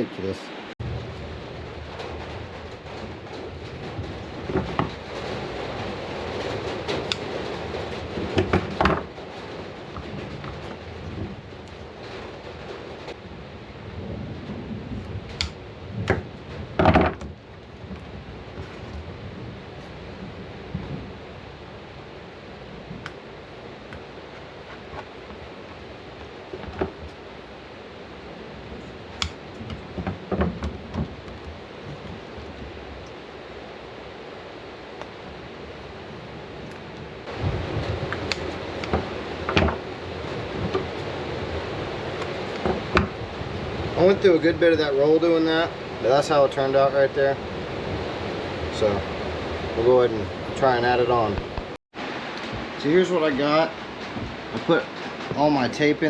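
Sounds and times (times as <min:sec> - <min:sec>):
steady background hiss: 0:00.0 - 0:56.0
steady background rumble: 0:00.0 - 0:56.0
objects knocking and clattering: 0:01.5 - 0:13.2, 0:14.4 - 0:19.2, 0:26.5 - 0:27.2, 0:29.2 - 0:32.8, 0:37.3 - 0:41.0, 0:42.5 - 0:43.4, 0:53.8 - 0:55.4
hard plastic parts knocking: 0:03.8 - 0:05.0, 0:08.2 - 0:09.2, 0:15.4 - 0:18.0, 0:26.5 - 0:27.2, 0:29.2 - 0:32.6, 0:38.2 - 0:39.9.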